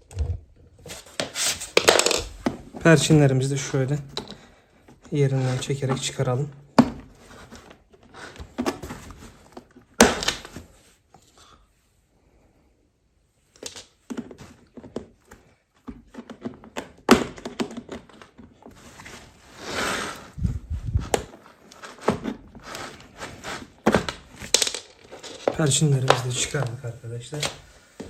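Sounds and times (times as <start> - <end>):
low thumps: 20.4 - 21.3.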